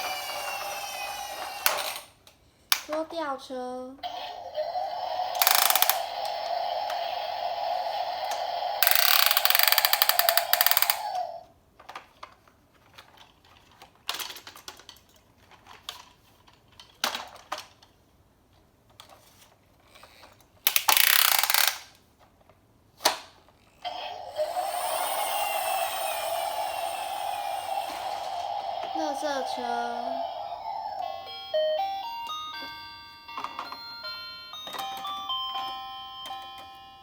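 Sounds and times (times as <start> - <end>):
toy electronic buzzing tone: 0.0 - 2.0, 4.0 - 11.4, 23.9 - 35.3
plastic toy clicks and rattles: 5.4 - 6.4, 8.8 - 11.2, 11.8 - 18.0, 18.9 - 22.0
short noisy bursts: 23.9 - 30.8.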